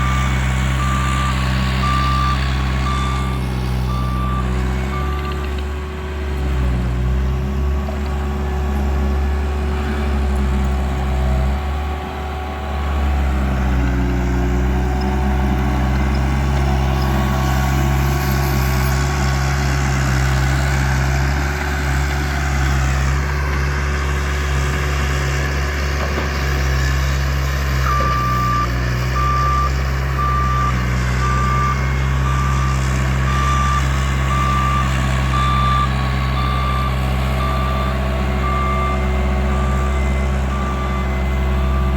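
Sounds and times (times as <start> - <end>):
loader engine running: 0.0 - 41.9
backup alarm beeping: 33.3 - 41.9.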